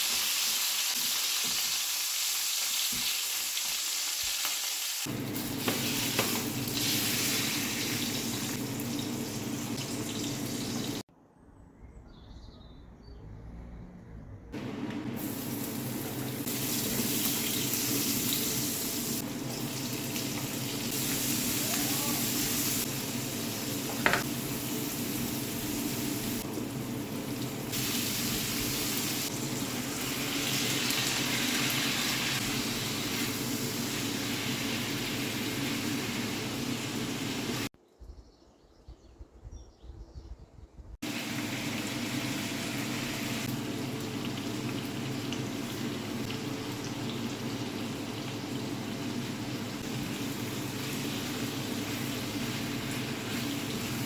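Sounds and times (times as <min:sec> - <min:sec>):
food sizzling in a pan: 0:00.0 - 0:11.1, 0:14.6 - 0:37.7, 0:41.0 - 0:54.0.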